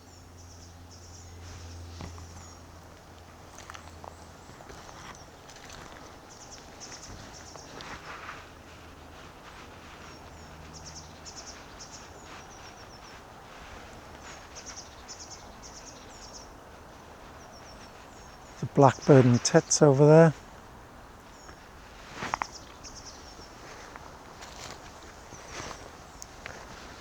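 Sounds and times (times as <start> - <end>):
distant traffic rumble: 0.0 - 27.0
tits singing high notes: 18.6 - 20.4.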